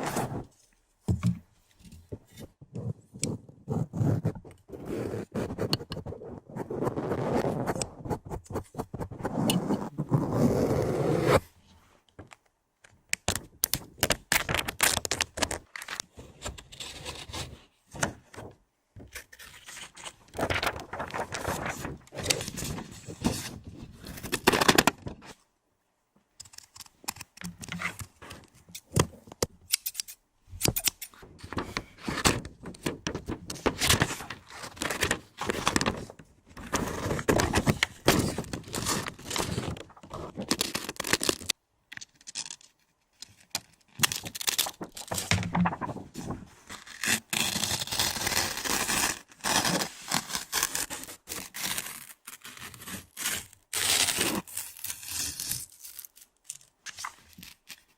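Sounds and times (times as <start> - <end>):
scratching and scraping: 1.8 - 11.5, 44.0 - 54.2.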